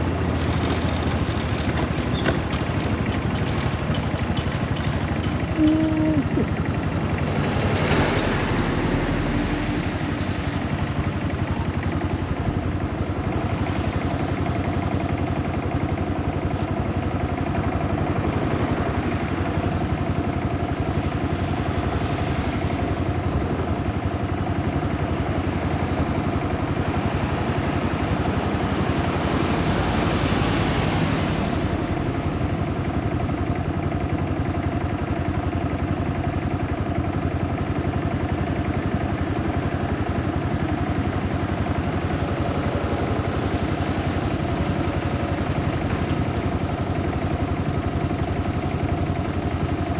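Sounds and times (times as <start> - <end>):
motorcycle engine running: 0.0 - 10.1, 10.8 - 29.2, 31.5 - 49.9
road and wind noise: 0.0 - 49.9
brief pitched tone: 5.6 - 6.5.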